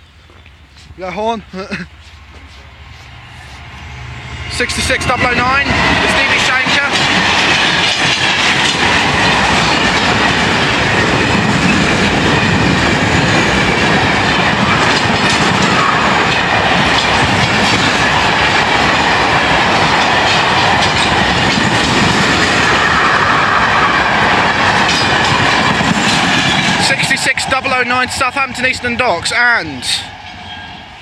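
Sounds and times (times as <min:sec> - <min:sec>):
train wheels clattering over rail joints: 0:04.8 - 0:27.6.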